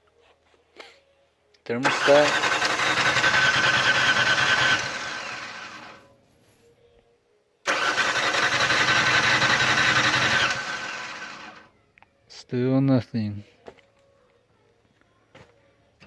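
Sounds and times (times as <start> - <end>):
car engine cranking on starter: 1.8 - 6.0, 7.7 - 11.7.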